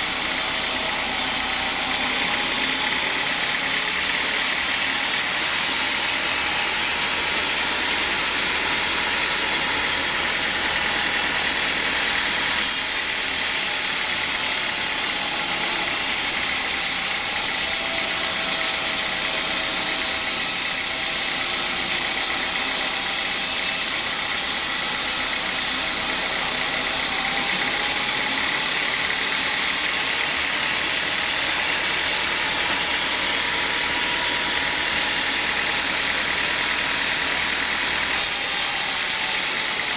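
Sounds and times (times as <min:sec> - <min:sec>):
sawmill saw cutting wood: 0:00.0 - 0:39.9.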